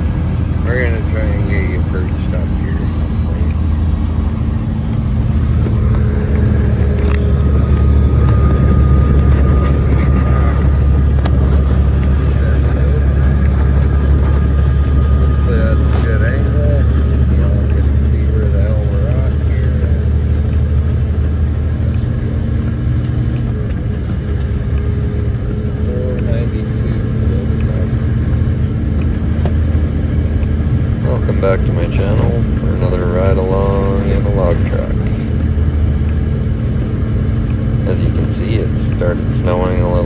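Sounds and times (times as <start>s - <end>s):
truck diesel engine drone: 0.0s - 40.0s
light clicks in cab: 15.1s - 40.0s.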